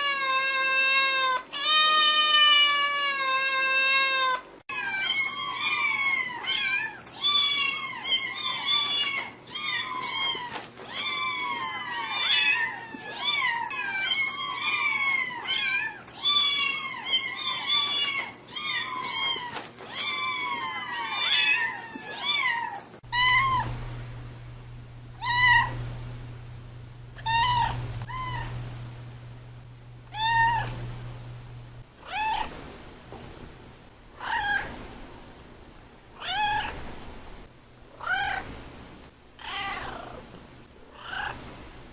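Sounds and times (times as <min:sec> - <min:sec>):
cat meowing: 0:00.0 - 0:23.7, 0:25.2 - 0:25.8, 0:27.2 - 0:28.6, 0:30.1 - 0:30.8, 0:32.0 - 0:32.5, 0:34.2 - 0:34.7, 0:36.2 - 0:36.8, 0:38.0 - 0:38.5, 0:39.4 - 0:40.2, 0:41.0 - 0:41.4
low hum: 0:23.0 - 0:34.2.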